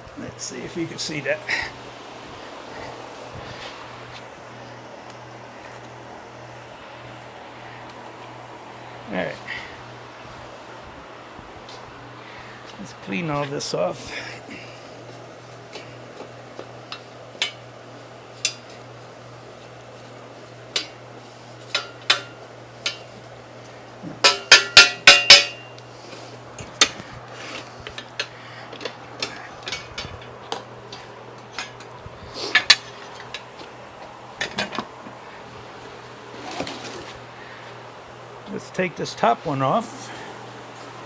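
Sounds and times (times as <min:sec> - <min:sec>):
ringing metal strikes: 0:24.2 - 0:25.8.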